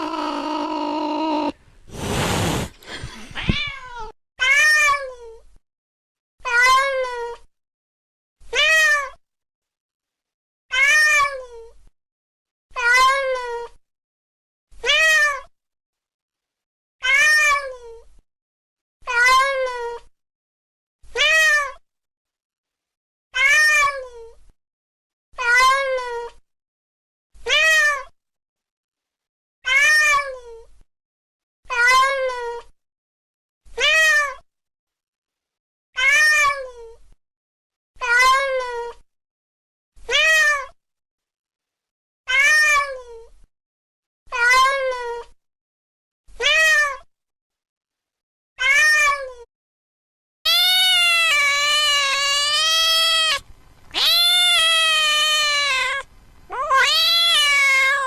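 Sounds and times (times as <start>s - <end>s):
cat meowing: 0.0s - 1.6s, 3.3s - 5.0s, 42.3s - 42.9s, 50.5s - 58.0s.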